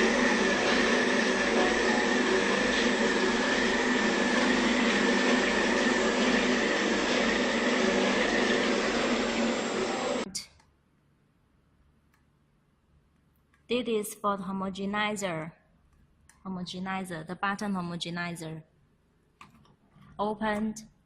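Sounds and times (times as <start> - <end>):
high motor whine: 0.0 - 10.3
mixer motor running: 0.0 - 10.3.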